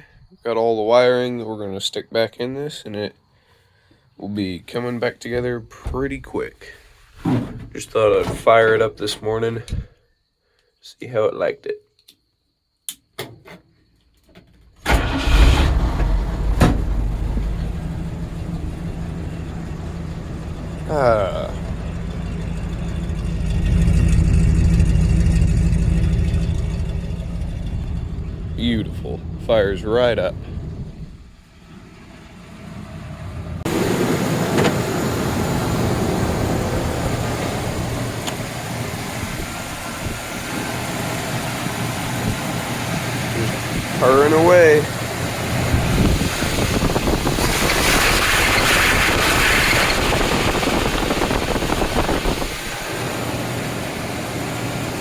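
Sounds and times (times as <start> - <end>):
truck engine starting and idling: 14.8 - 55.0.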